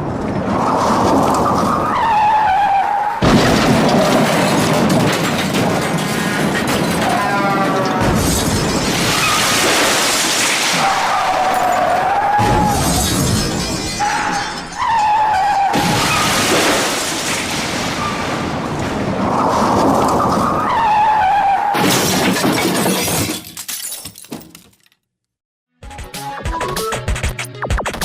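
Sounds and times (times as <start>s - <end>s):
wavering honks or squeals: 1.8s - 3.2s
glass shattering: 3.2s - 18.2s, 21.8s - 25.0s
debris clattering: 3.2s - 20.6s, 21.8s - 25.0s
metal crunching: 3.2s - 20.6s.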